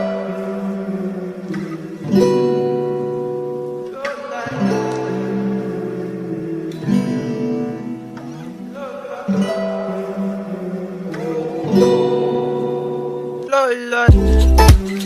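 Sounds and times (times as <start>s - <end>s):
strummed guitar chords: 0.0s - 15.0s.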